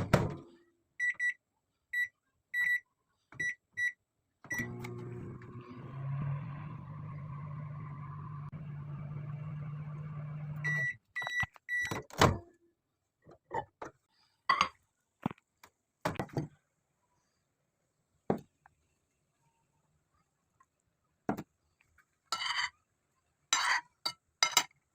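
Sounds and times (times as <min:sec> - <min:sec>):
microwave oven humming: 0:04.5 - 0:11.0.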